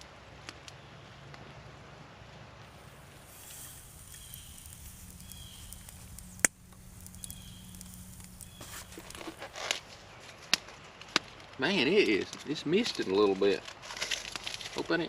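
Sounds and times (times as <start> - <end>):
campfire crackling: 0.0 - 15.0
fire popping: 2.6 - 15.0.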